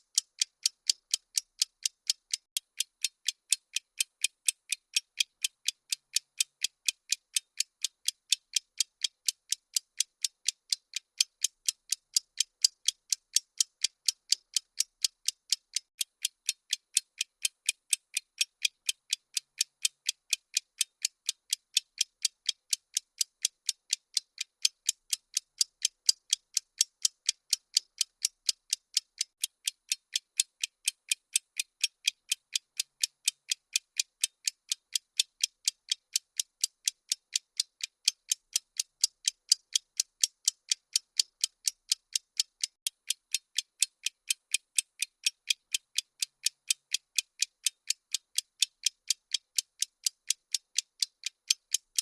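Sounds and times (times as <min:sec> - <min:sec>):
timer ticking clicks: 0:00.0 - 0:52.0.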